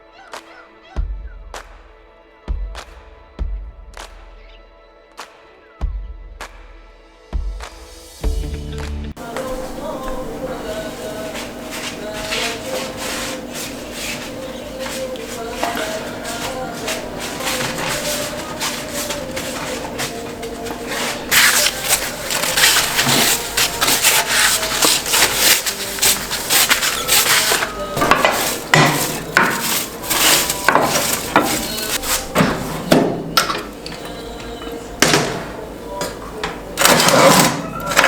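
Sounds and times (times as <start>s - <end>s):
scraping and rubbing strokes: 9.2s - 32.9s.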